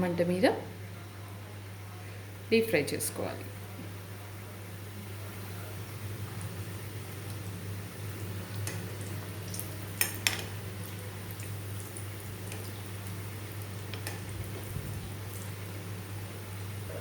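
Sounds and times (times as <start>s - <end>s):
dough sizzling in hot oil: 5.8s - 16.8s.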